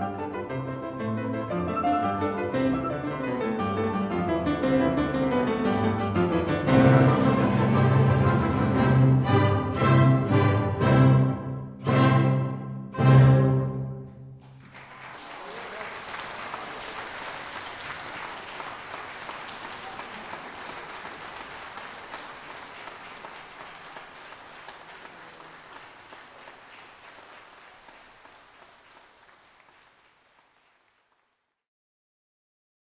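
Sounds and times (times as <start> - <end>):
audience applauding: 14.4 - 31.6.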